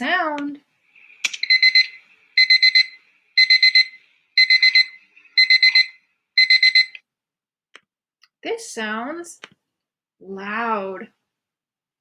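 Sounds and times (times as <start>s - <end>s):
alarm clock beeping: 1.4s - 7.0s.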